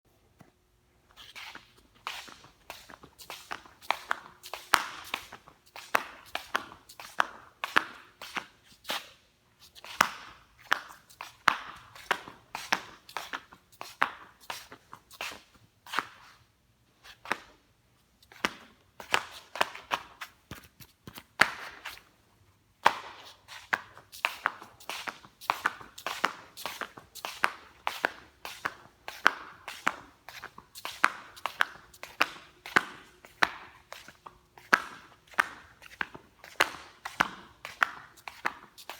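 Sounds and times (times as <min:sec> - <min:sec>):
rubber flip-flops slapping: 0:01.2 - 0:09.1, 0:09.7 - 0:16.4, 0:22.8 - 0:38.9.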